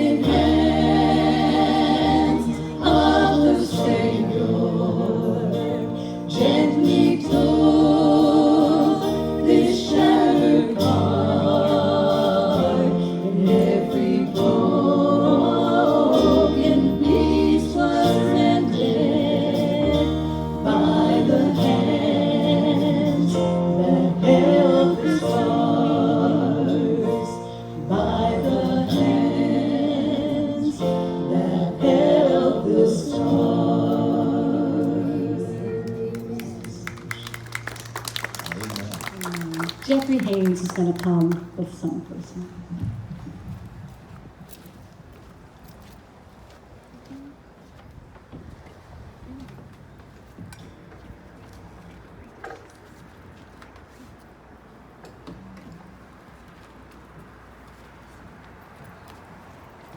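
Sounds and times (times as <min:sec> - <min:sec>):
long-held bass notes: 0:00.0 - 0:37.1
gospel singing: 0:00.0 - 0:38.9.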